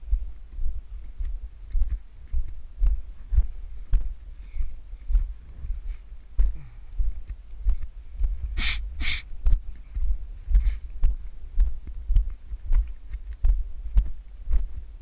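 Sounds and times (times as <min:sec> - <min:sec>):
breath hisses: 0:08.6 - 0:09.3, 0:10.6 - 0:10.9.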